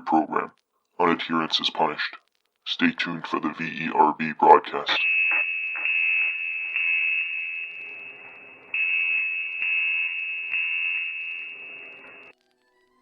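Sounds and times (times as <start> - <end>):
high electronic tone: 5.0 - 12.4.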